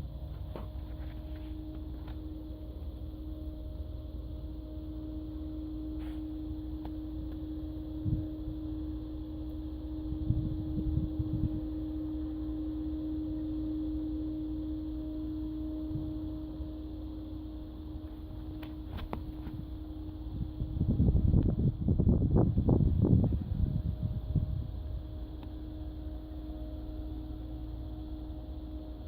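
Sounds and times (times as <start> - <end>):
wind rumble: 0.0 - 12.4, 18.2 - 26.9
distant siren steady tone: 0.0 - 29.0
wind buffeting microphone: 8.0 - 8.6, 10.1 - 11.8, 19.0 - 25.3.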